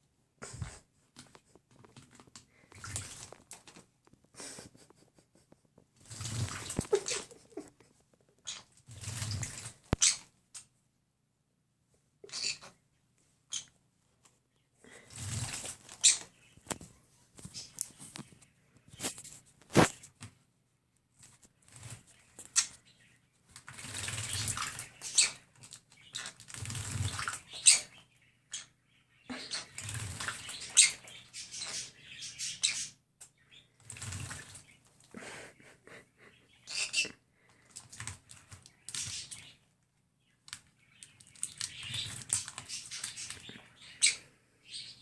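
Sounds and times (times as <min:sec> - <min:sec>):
bird wings splashing water: 0:02.8 - 0:03.8, 0:06.0 - 0:07.2, 0:08.9 - 0:09.9, 0:23.5 - 0:27.8, 0:29.5 - 0:31.0, 0:33.8 - 0:34.8, 0:41.0 - 0:43.5.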